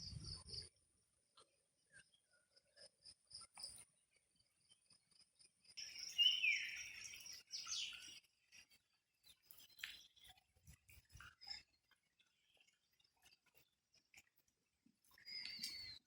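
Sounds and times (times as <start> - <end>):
bird chirping: 5.8 - 8.2, 15.1 - 16.0.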